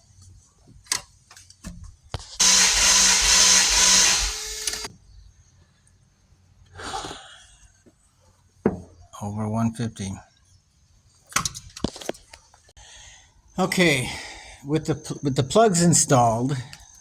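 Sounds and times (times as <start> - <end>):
sharp clicks: 2.2 - 4.9
starter motor cranking engine: 2.2 - 4.9.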